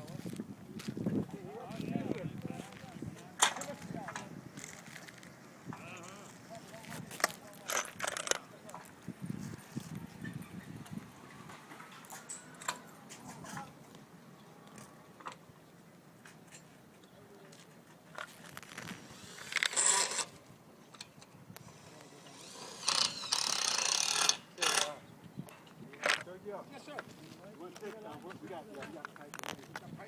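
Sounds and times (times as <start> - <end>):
rasping bursts: 18.5 - 20.4, 21.6 - 25.0.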